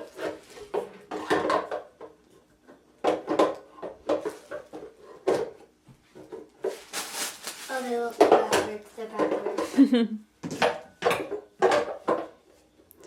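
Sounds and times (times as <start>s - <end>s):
rustling: 6.1s - 9.2s.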